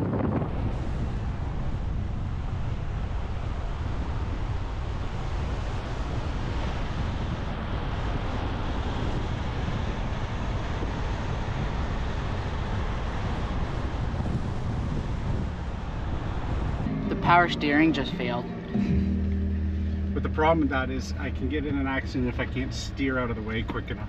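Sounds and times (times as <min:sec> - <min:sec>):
wind noise: 0:00.0 - 0:23.0
truck driving rumble: 0:00.0 - 0:24.0.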